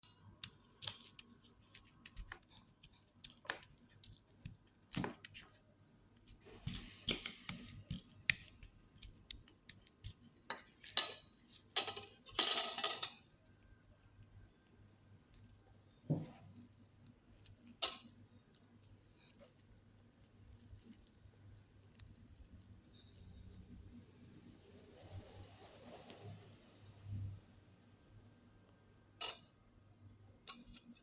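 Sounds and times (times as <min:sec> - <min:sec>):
kitchenware clicking and clinking: 0:10.5 - 0:13.2.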